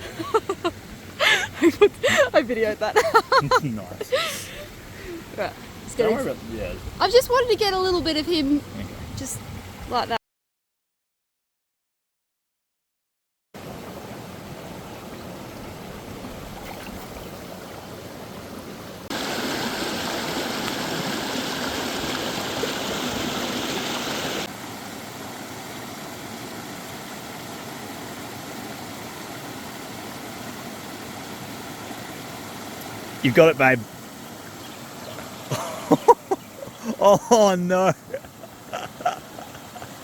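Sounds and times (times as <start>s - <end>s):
mountain stream flowing: 0.0s - 8.8s, 13.6s - 40.0s.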